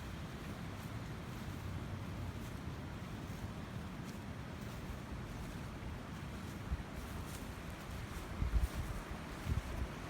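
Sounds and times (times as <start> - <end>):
steady outdoor hiss: 0.0 - 10.0
wind buffeting microphone: 7.8 - 10.0.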